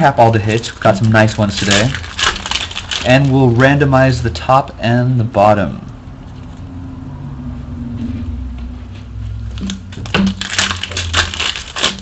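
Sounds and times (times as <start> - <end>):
wrapper crackling and crinkling: 0.0 - 3.8, 9.5 - 12.0.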